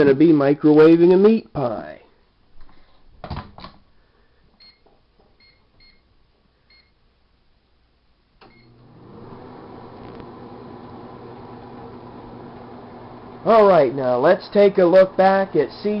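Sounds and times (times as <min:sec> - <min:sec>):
microwave oven humming: 0:08.4 - 0:15.7.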